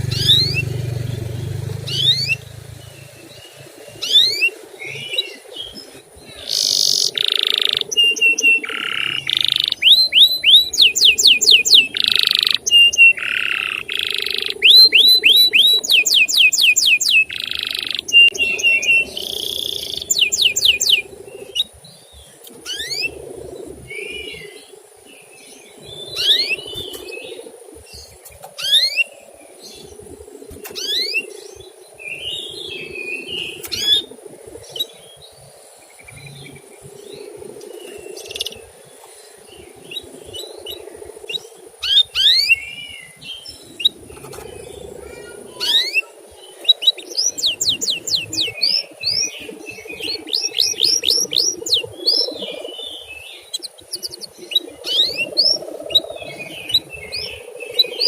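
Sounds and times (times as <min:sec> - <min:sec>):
canary chirping: 0:00.0 - 0:05.0, 0:05.8 - 0:21.8, 0:22.6 - 0:23.2, 0:40.7 - 0:58.0
steady low hum: 0:00.0 - 0:06.9.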